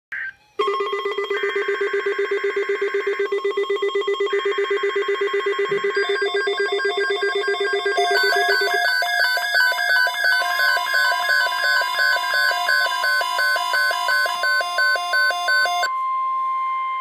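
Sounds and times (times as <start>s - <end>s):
stepping electronic melody: 0.6s - 15.9s
rapidly pulsing electronic tone: 1.2s - 15.9s
shrill warbling data tones: 5.2s - 15.9s.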